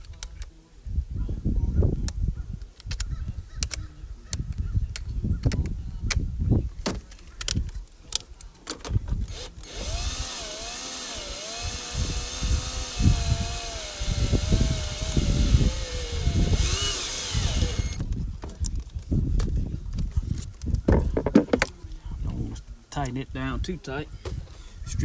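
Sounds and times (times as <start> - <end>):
power drill whining: 9.3 - 18.0.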